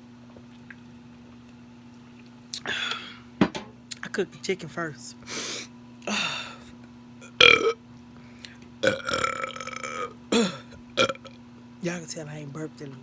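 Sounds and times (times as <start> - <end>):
person burping: 2.6 - 3.2, 6.1 - 6.6, 7.2 - 7.8, 8.8 - 11.4.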